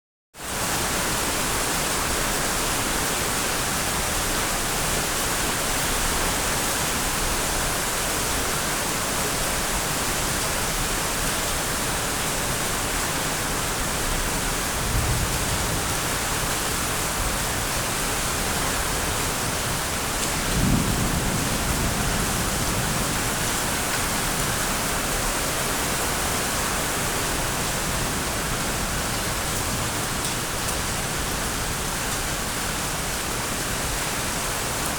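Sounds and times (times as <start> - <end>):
heavy rain falling: 0.4 - 34.9.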